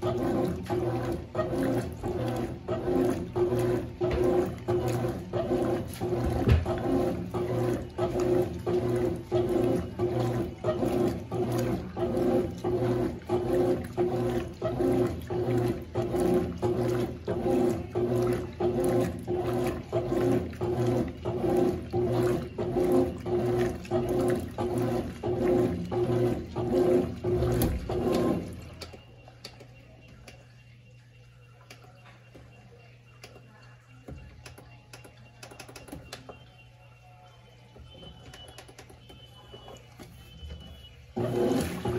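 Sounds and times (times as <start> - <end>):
water sloshing: 0.0 - 30.4, 39.0 - 41.9
washing machine agitating: 0.0 - 41.9.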